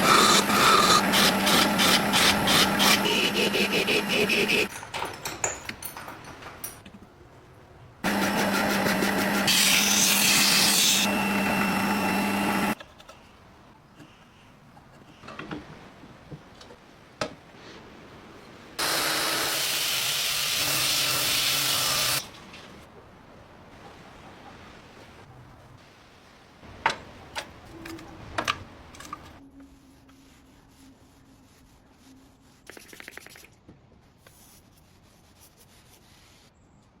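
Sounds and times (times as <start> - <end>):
handling clicks and knocks: 4.7 - 7.1.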